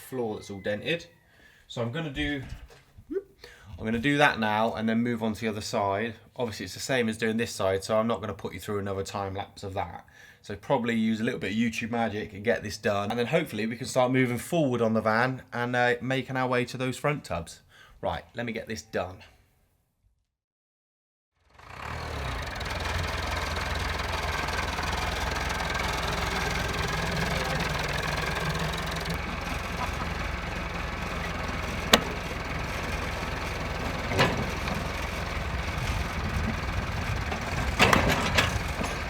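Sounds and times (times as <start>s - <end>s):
engine idling: 21.5s - 39.0s
sharp knocks: 29.1s - 35.4s.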